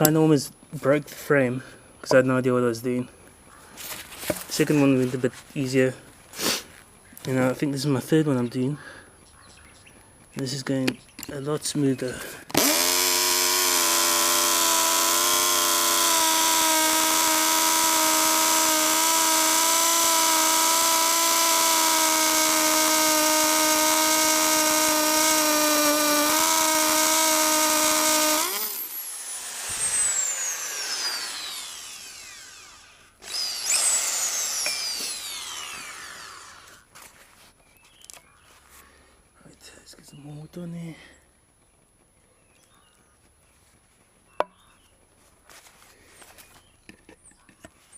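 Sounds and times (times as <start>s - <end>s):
power drill whining: 12.5s - 36.9s.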